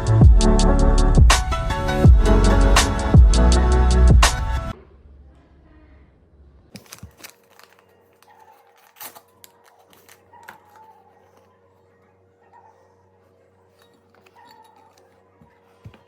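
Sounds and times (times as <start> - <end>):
rustling and crinkling: 6.7 - 12.0, 12.7 - 16.0.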